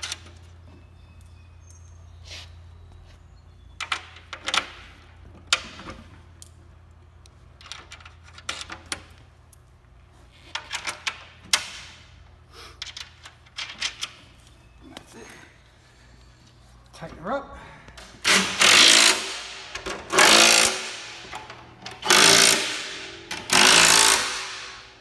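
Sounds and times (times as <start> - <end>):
steady low hum: 14.4 - 25.0
metal hardware clanking: 18.0 - 25.0.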